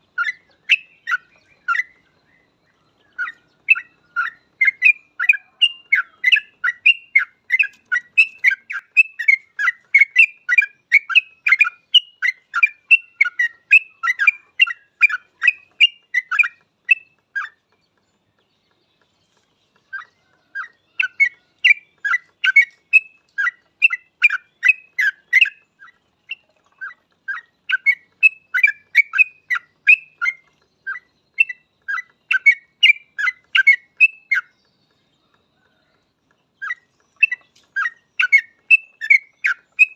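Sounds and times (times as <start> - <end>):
bird chattering song: 0.0 - 39.9.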